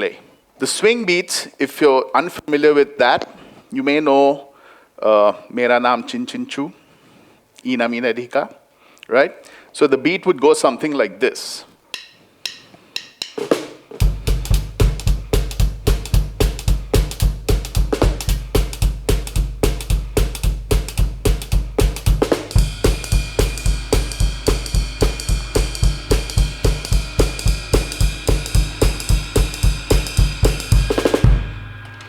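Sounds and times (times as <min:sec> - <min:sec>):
drum kit swing beat: 0:11.9 - 0:32.0
ringing cymbal: 0:14.0 - 0:32.0.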